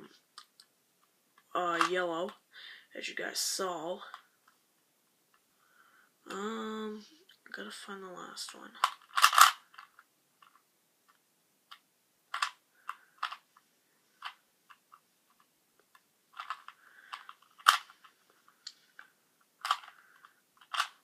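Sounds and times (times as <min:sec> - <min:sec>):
plastic puzzle cube clicking: 0:08.7 - 0:13.5, 0:14.2 - 0:21.0.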